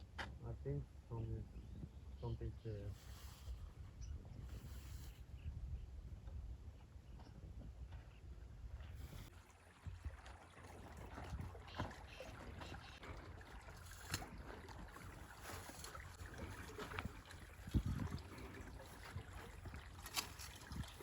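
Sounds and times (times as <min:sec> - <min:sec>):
water sloshing and splashing: 0:08.8 - 0:21.0.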